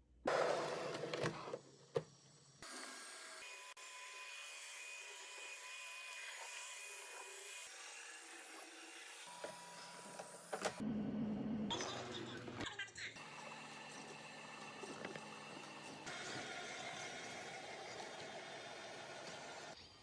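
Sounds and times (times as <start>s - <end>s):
robot vacuum cleaner running: 13.2s - 19.8s.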